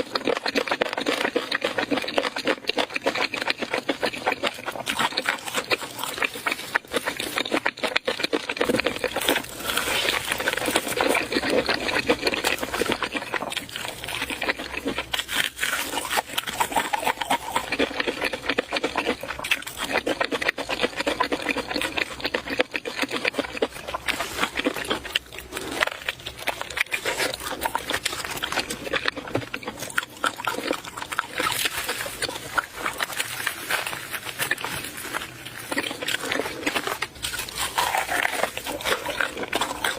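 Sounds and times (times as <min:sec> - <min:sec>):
wet chewing and smacking: 0:00.0 - 0:39.9.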